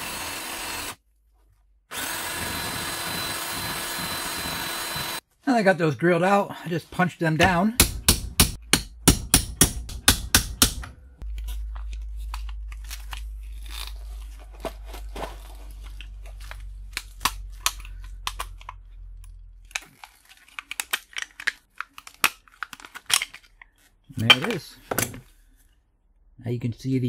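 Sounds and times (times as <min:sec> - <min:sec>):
hammer striking a punch: 0:07.4 - 0:11.0
clicks and small cracks: 0:16.0 - 0:23.8.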